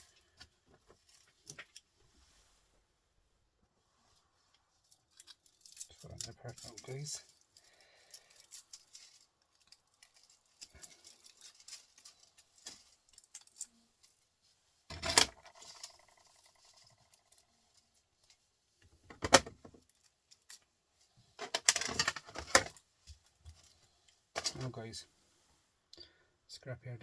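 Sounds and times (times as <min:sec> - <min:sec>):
metal parts clinking and rattling: 0:00.0 - 0:01.8, 0:04.8 - 0:14.3, 0:14.9 - 0:18.4, 0:21.4 - 0:22.8, 0:24.4 - 0:24.7.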